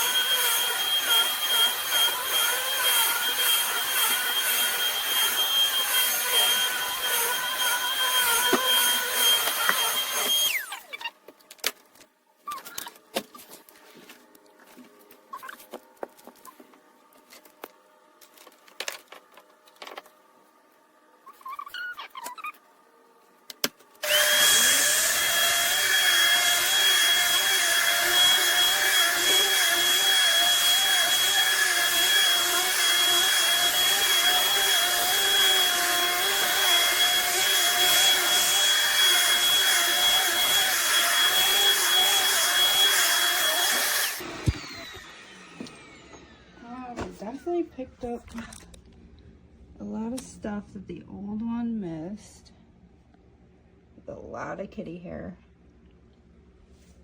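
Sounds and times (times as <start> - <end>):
vacuum cleaner whining: 0.0 - 11.0, 24.0 - 47.6.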